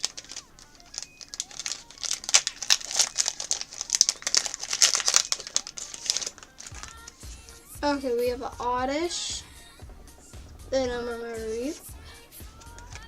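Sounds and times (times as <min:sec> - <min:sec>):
foil wrapper crinkling: 0:00.0 - 0:07.2.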